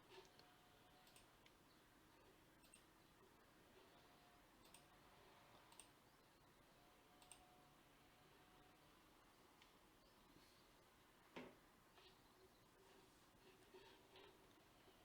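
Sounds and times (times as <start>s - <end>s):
computer controls clicking: 0.2s - 1.6s, 2.6s - 2.9s, 4.6s - 4.9s, 5.6s - 6.0s, 7.2s - 7.5s.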